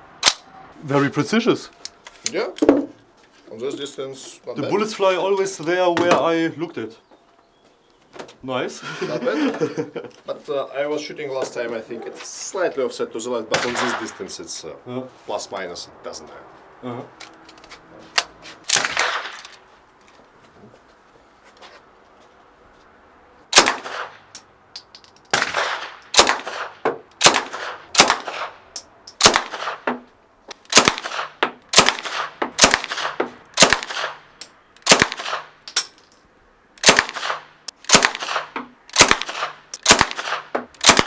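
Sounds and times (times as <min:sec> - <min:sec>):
suppressed submachine gun shots: 0:36.8 - 0:41.0.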